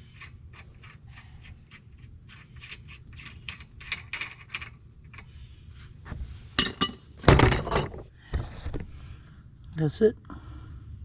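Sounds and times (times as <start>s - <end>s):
metal tools clinking on car parts: 6.6s - 8.0s.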